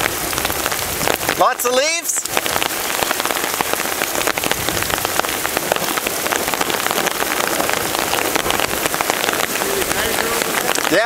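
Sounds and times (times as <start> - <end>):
heavy rain: 0.0 - 11.0.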